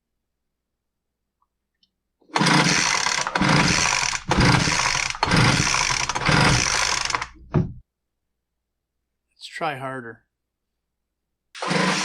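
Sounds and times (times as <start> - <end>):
leaf blower recoil starter pulls: 2.4 - 7.4, 11.6 - 12.0.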